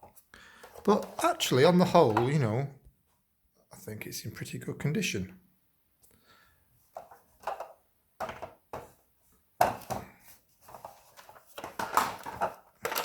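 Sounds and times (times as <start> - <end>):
plastic toy clattering: 7.0 - 8.8, 10.7 - 13.0
plastic toy car knocks and clicks: 7.0 - 9.0, 11.5 - 13.0.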